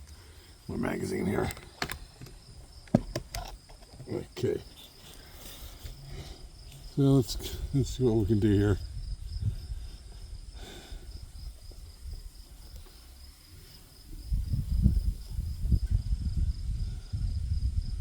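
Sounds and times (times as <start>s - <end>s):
insect trill: 0.0s - 18.0s
wind buffeting microphone: 5.7s - 18.0s.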